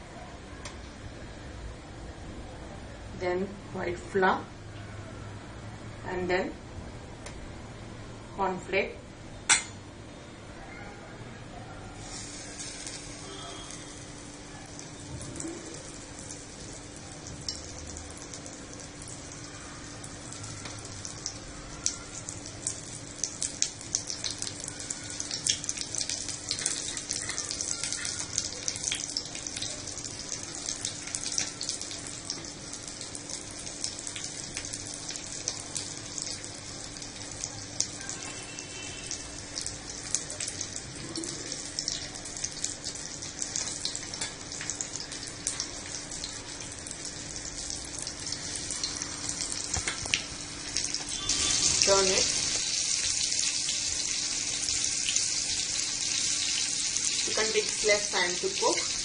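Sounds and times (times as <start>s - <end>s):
faint steady hum: 0.0s - 59.0s
food frying in hot oil: 12.0s - 59.0s.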